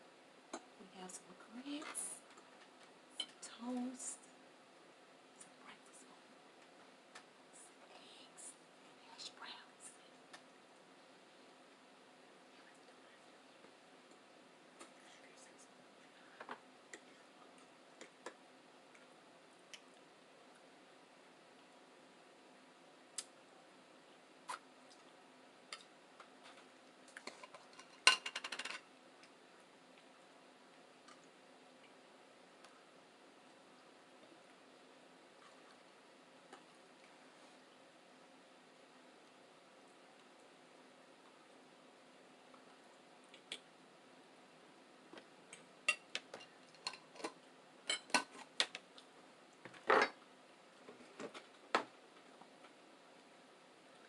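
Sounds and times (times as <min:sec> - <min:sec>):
cutlery clinking on plates: 0:47.9 - 0:48.4.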